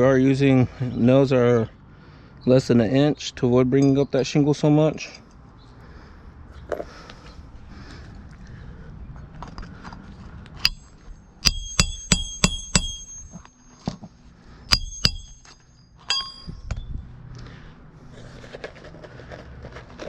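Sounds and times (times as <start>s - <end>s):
hammer striking nails: 11.4s - 13.5s, 14.7s - 16.8s.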